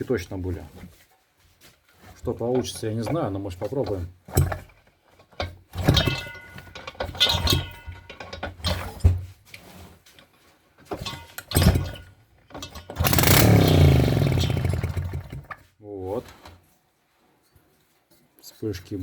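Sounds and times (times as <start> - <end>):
engine cranking: 2.4 - 9.0, 10.9 - 15.7
two-stroke engine running loudly: 13.0 - 15.5.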